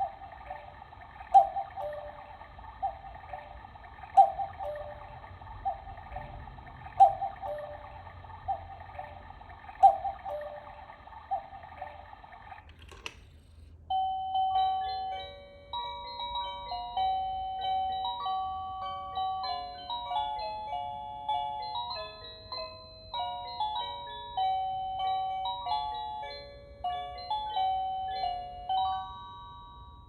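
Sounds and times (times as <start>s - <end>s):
electronic chime melody: 0.0s - 12.7s
electronic cuckoo call: 0.0s - 13.2s.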